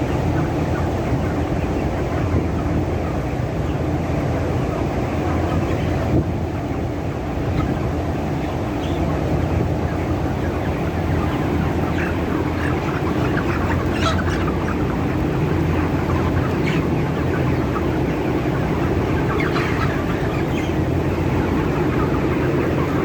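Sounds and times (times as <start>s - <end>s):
chickens clucking and calling: 0.0s - 23.0s
steady low hum: 0.0s - 23.0s.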